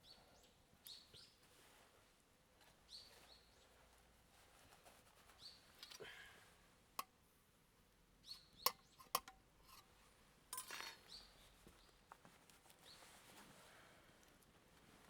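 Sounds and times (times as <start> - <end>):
small birds chirping: 0.0 - 1.5, 2.8 - 3.8, 5.3 - 6.0, 8.2 - 9.1, 11.0 - 12.0.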